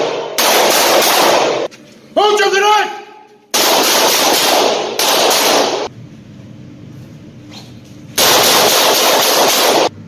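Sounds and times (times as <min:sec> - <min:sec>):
rapid handgun fire: 0:00.0 - 0:01.7, 0:03.5 - 0:05.9, 0:08.2 - 0:10.0.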